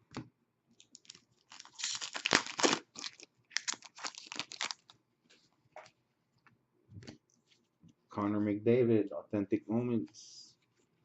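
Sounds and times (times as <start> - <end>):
foil wrapper tearing and crinkling: 0.9 - 4.9.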